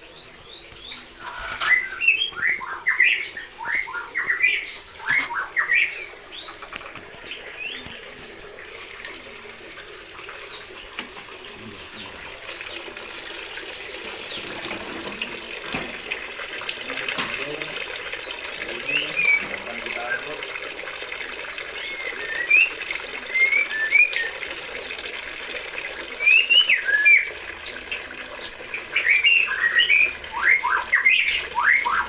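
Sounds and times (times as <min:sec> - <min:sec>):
bird chirping calls: 0:00.0 - 0:08.3, 0:09.9 - 0:20.4, 0:25.2 - 0:32.0.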